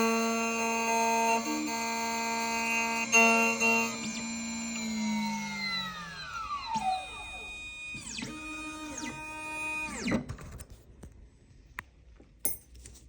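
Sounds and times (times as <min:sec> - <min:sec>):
key cutting machine motors whining: 0:00.0 - 0:10.3.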